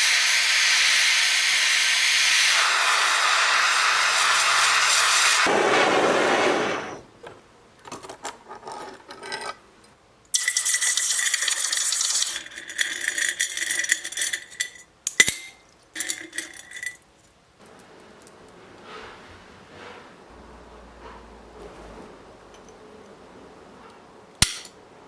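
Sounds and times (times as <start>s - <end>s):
steady hiss with high whistle: 0.0s - 7.1s
metal chain links clinking: 16.0s - 18.4s.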